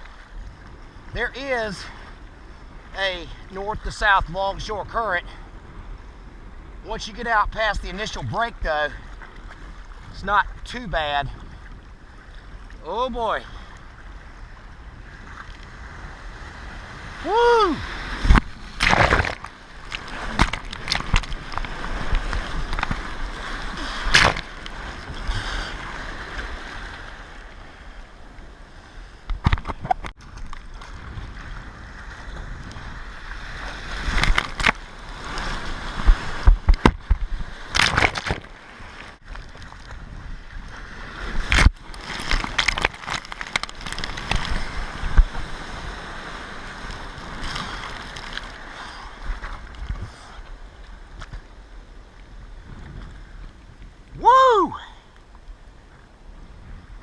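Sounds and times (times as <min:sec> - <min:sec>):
rush of wind and water: 0:00.0 - 0:57.0
loud splashes: 0:17.2 - 0:22.5
water sloshing and splashing: 0:17.8 - 0:28.0, 0:29.2 - 0:50.1.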